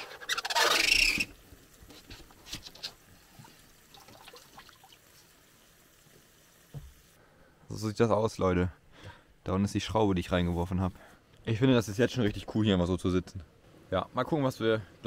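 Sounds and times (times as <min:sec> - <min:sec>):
water trickling and dripping: 0:01.4 - 0:07.2.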